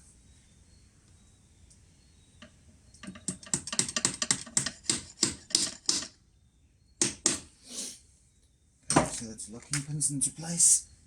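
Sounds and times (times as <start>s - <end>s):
sharp taps on metal pins: 3.0s - 6.1s.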